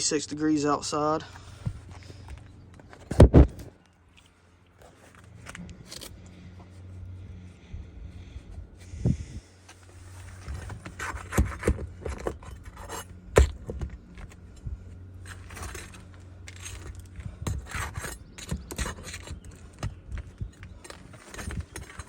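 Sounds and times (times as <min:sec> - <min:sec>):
hand tools scraping and rasping: 0:09.7 - 0:22.0.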